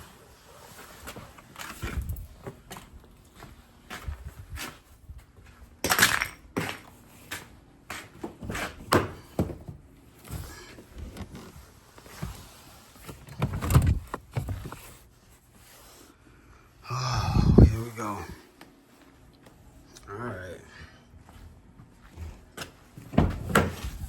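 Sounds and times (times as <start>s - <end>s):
rustling scrapes: 14.4s - 16.2s.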